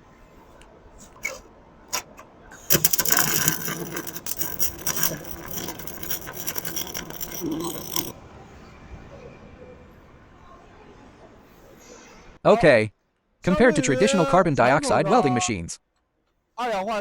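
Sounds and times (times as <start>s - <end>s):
welding arc crackle: 2.7s - 8.1s.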